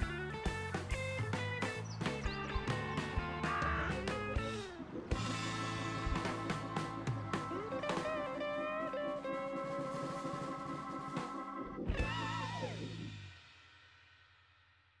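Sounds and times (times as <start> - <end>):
instrumental music with drums: 0.0 - 14.0.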